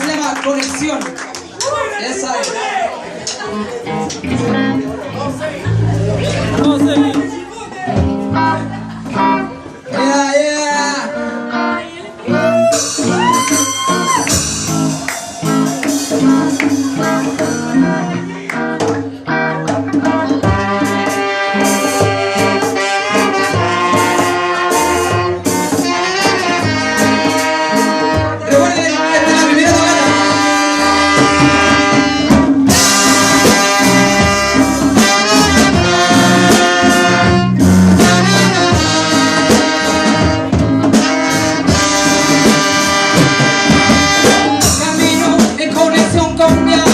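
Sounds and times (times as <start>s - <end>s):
brass horns playing: 3.9s - 7.3s, 19.3s - 46.9s
person singing: 44.3s - 46.9s.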